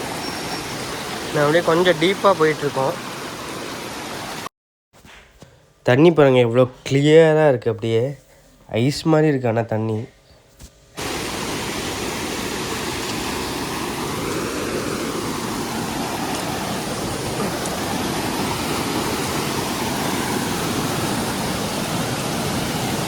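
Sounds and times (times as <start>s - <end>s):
rushing water hiss: 0.0s - 4.5s, 11.0s - 23.0s.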